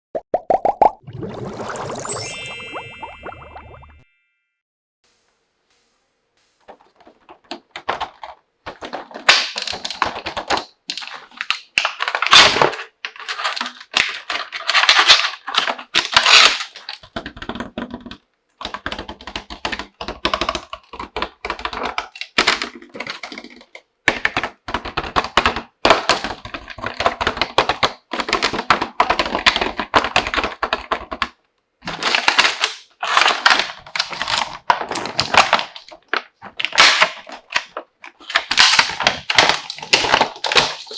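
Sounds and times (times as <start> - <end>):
plastic pieces clicking: 7.3 - 40.9
packaging crackling: 31.9 - 40.9.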